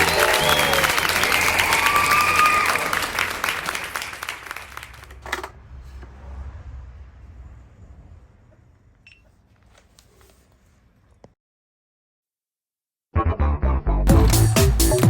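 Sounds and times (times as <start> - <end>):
people clapping: 0.0 - 5.5, 14.1 - 15.0
low rumble: 5.5 - 9.1.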